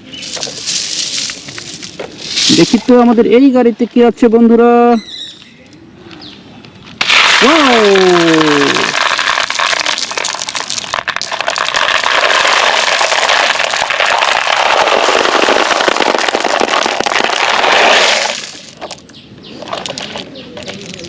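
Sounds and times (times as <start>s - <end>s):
marbles pouring and clattering: 0.2s - 3.2s, 7.0s - 19.0s.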